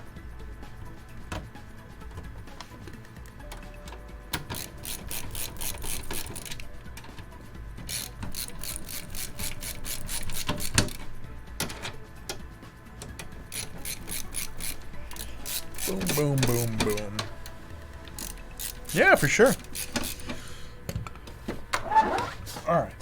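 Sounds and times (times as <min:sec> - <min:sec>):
ratcheting screwdriver clicks: 0:04.4 - 0:06.7, 0:07.9 - 0:11.8, 0:13.0 - 0:21.2.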